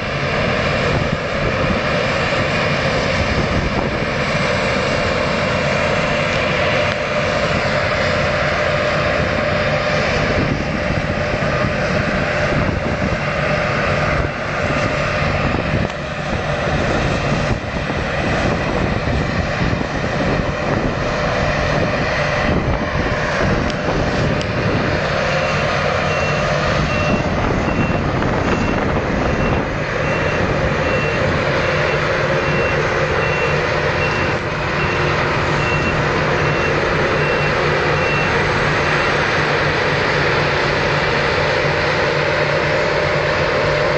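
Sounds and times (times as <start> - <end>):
combine harvester running: 0.0 - 43.9
reversing alarm beeps: 25.3 - 39.2.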